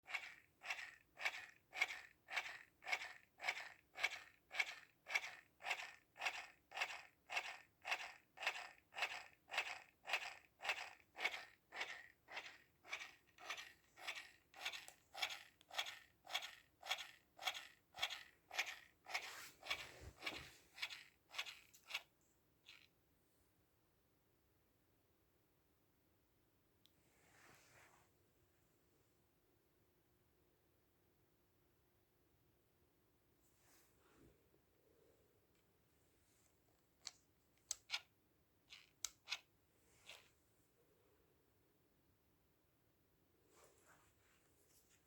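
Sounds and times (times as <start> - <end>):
air freshener dispenser ticking: 0.1 - 22.0.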